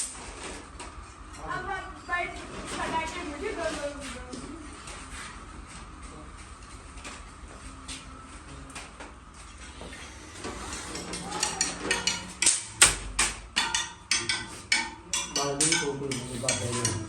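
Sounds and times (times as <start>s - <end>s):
hard objects knocking and clicking: 10.8s - 17.0s.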